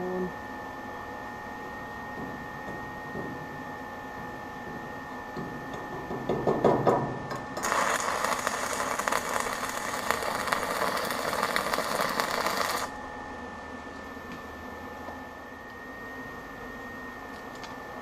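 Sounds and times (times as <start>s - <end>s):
arc welding crackle: 7.5s - 13.0s
welding rod sputtering: 7.6s - 13.0s.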